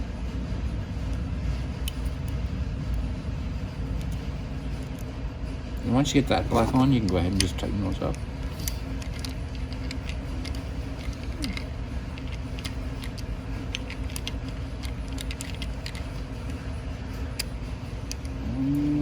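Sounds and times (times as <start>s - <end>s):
steady low hum: 0.0s - 19.0s
hand tools clicking: 6.4s - 16.6s, 17.2s - 19.0s.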